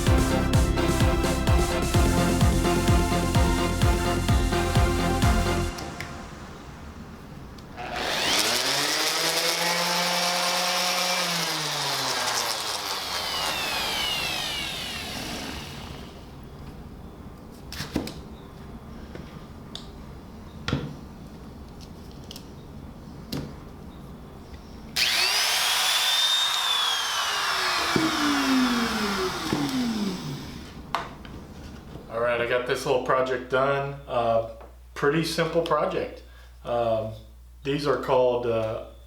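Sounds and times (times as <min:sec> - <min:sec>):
power tool motor running: 0:07.8 - 0:16.3, 0:25.0 - 0:30.8.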